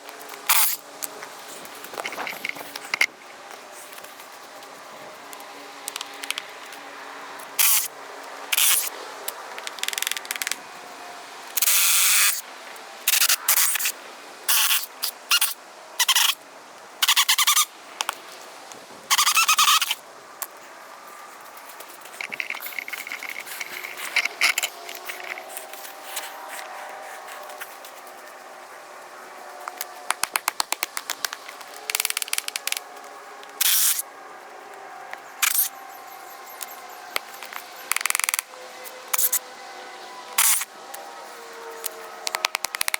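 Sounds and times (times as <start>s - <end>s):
fast runs of clicks: 29.8s - 32.8s.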